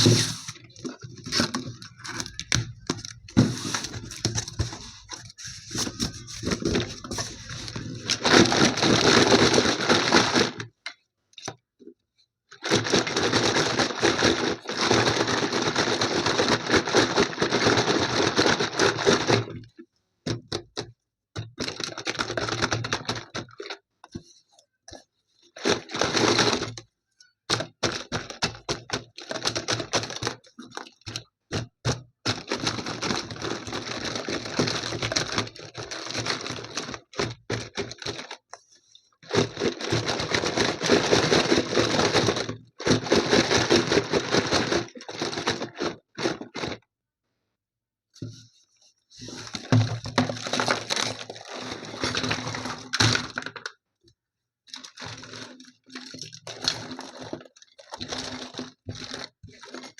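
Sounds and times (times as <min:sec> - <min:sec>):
packaging rustling and tearing: 0:00.0 - 0:10.7, 0:12.6 - 0:19.4, 0:27.6 - 0:31.0, 0:32.3 - 0:38.5, 0:39.2 - 0:46.8, 0:49.2 - 0:53.7, 0:54.7 - 0:59.9.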